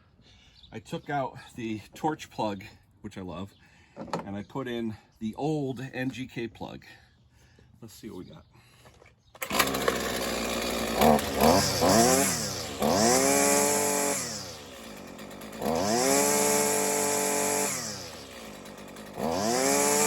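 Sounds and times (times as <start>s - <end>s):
string trimmer engine revving: 9.4s - 20.0s.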